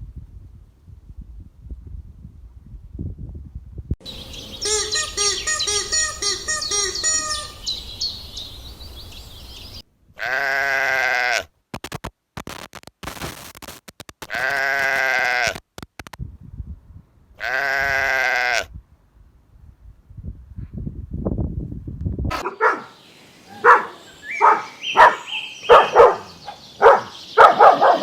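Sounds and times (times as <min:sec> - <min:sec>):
bird chirping rapidly: 0:04.0 - 0:09.8, 0:22.4 - 0:28.0
sheep bleating: 0:10.2 - 0:11.5, 0:14.2 - 0:15.6, 0:17.4 - 0:18.7.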